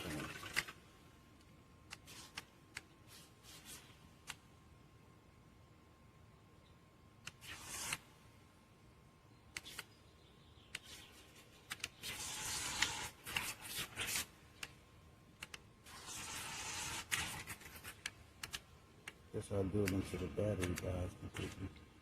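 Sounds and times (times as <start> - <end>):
sharp clicks: 9.5 - 10.0, 11.6 - 13.5, 15.4 - 15.7, 17.0 - 21.6.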